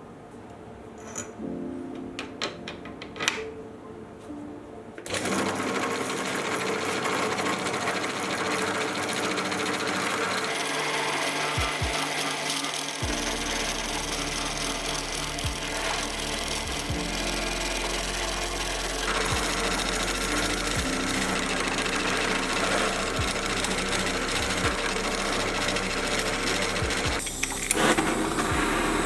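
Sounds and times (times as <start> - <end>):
metal clicks and knocks: 1.0 - 3.6
machine tool cutting metal: 5.1 - 29.0
low hum: 13.0 - 29.0.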